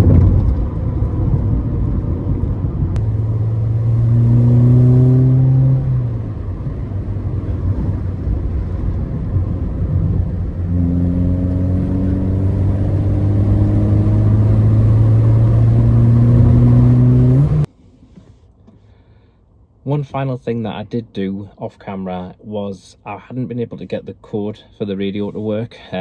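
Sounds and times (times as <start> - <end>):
car engine pulling on the road: 0.0 - 17.7.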